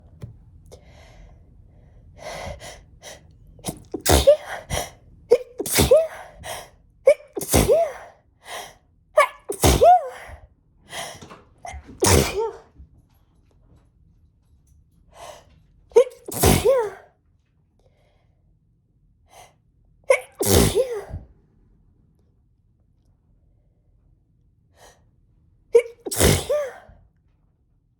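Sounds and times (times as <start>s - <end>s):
woman sneezing: 3.7s - 8.2s, 9.2s - 10.4s, 11.7s - 12.7s, 16.0s - 17.1s, 20.1s - 21.3s, 25.8s - 27.0s.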